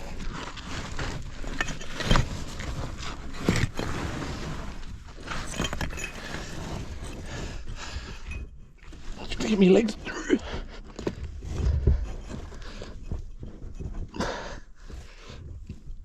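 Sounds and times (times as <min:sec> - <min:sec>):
gear scraping against rock: 0:00.0 - 0:16.0
small stones clinking: 0:01.3 - 0:04.0, 0:04.7 - 0:07.3.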